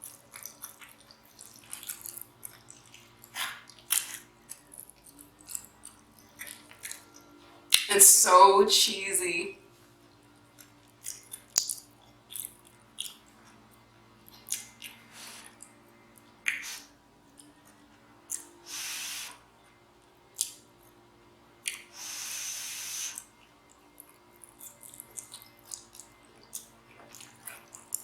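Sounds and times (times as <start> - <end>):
chewing food: 0.0 - 7.9, 9.7 - 28.0
hissy sounds: 18.7 - 19.4.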